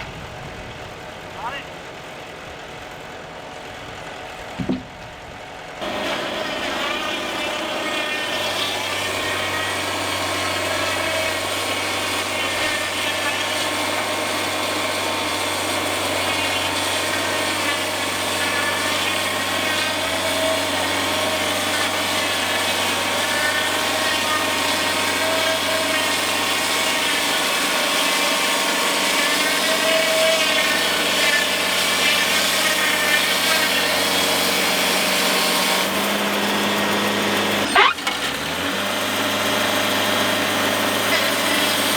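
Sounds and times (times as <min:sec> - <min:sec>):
sawmill engine running: 0:00.0 - 0:41.9
band blade whining: 0:37.4 - 0:38.4.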